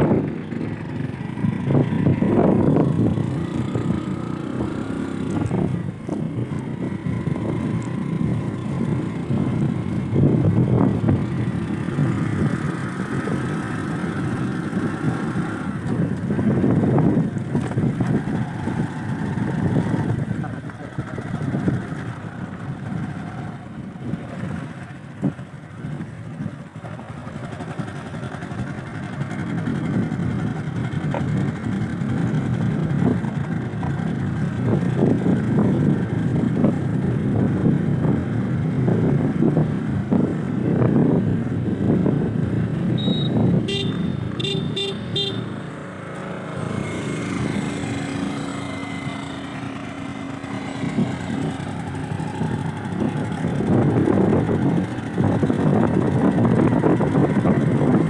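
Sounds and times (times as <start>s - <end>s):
diesel engine running: 0.0s - 58.0s
vehicle horn beeps: 42.9s - 45.6s.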